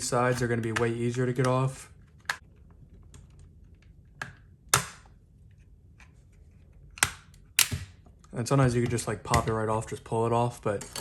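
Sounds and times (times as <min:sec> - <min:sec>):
plastic latches clicking: 0:06.9 - 0:08.0.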